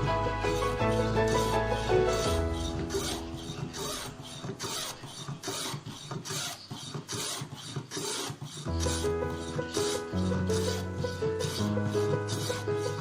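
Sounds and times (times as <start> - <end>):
background music: 0.0 - 5.2, 8.7 - 13.0
rasp scraping wood: 0.0 - 13.0.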